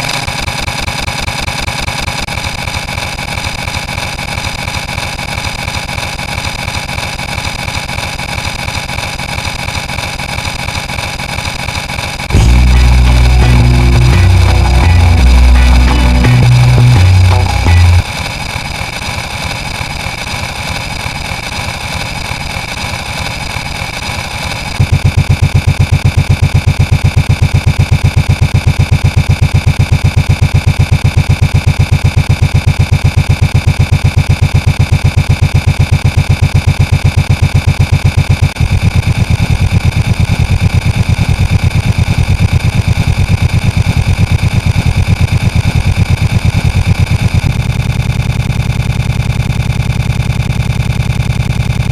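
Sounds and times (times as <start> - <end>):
engine-like sound effect: 0.0 - 51.9
pulsing low rumble: 12.3 - 18.1, 38.6 - 48.6.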